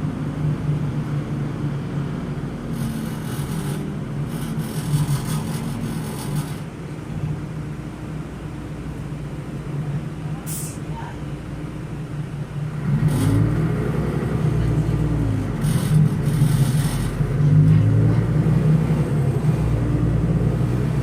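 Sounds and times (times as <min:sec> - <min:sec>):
bus engine humming: 0:00.0 - 0:21.0
short hiss: 0:10.5 - 0:10.8.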